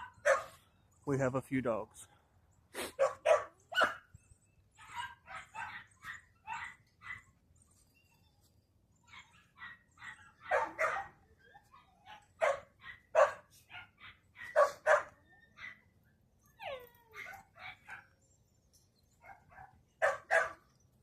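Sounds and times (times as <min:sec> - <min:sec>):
dogs barking: 0:00.0 - 0:00.6, 0:02.8 - 0:04.1, 0:04.8 - 0:07.4, 0:09.1 - 0:15.9, 0:16.7 - 0:18.2, 0:19.2 - 0:20.8
dog whining: 0:07.9 - 0:13.0, 0:14.0 - 0:18.1.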